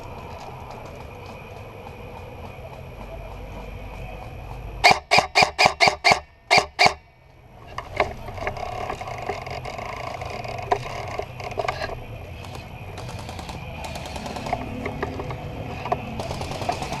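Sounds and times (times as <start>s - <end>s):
airsoft gun firing: 4.8s - 7.0s
scraping and rustling: 7.6s - 17.0s
small clicks: 7.8s - 17.0s.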